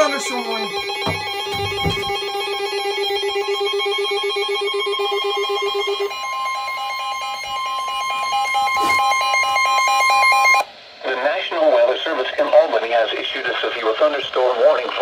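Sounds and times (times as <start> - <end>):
rapidly pulsing ringing tone: 0.0 - 10.7
steady warning alarm tone: 0.0 - 10.7.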